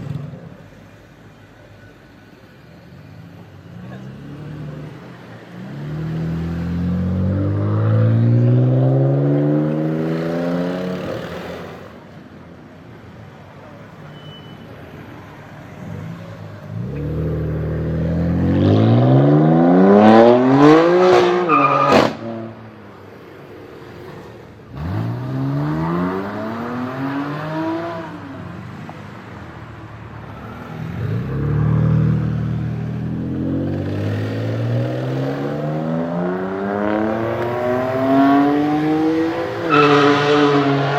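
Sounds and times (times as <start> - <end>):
car engine revving: 3.8 - 11.8, 24.7 - 28.5, 30.4 - 40.9.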